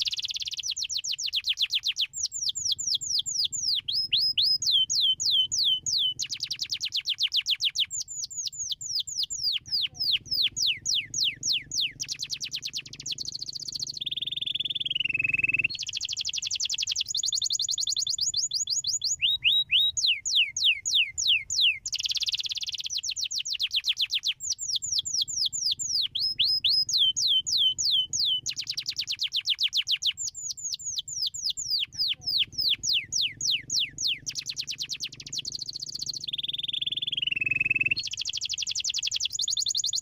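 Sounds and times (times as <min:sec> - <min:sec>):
canary singing trills: 0:00.0 - 0:40.0.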